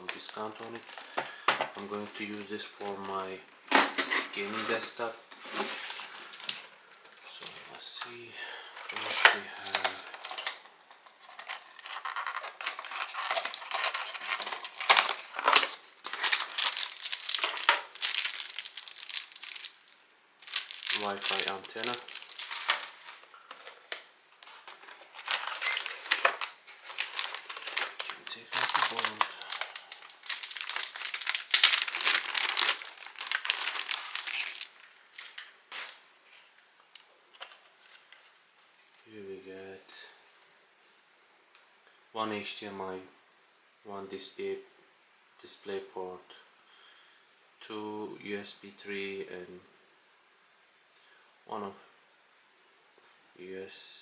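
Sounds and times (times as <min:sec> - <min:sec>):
plastic packaging crinkling: 0:00.0 - 0:03.3, 0:08.9 - 0:36.0
sharp plastic crackles: 0:09.3 - 0:36.0.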